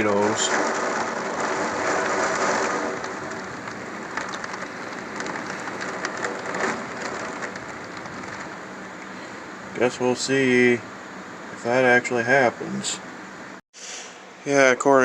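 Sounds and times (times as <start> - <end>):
heavy rain falling: 0.0 - 8.8
raindrops striking close by: 0.0 - 9.1.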